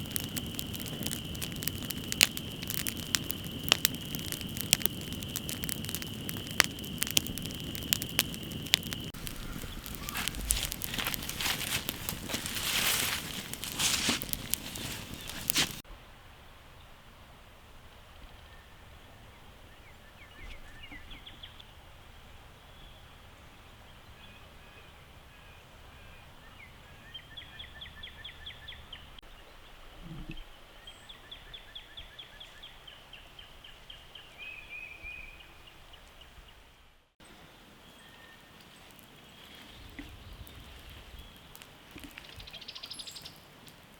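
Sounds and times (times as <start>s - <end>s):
birds chirping rapidly: 0.1s - 15.5s.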